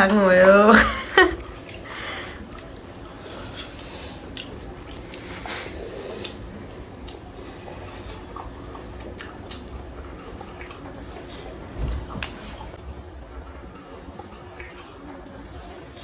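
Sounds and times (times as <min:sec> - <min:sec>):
people chewing: 0:00.0 - 0:16.0.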